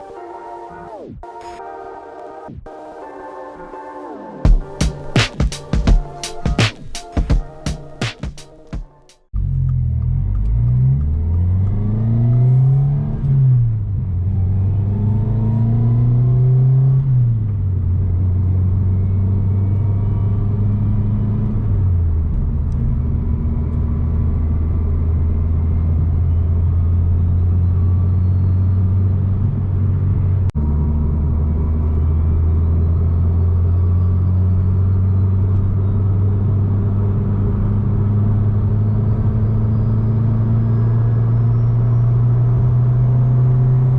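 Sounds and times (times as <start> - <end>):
car engine revving with gear changes: 9.4 - 17.6.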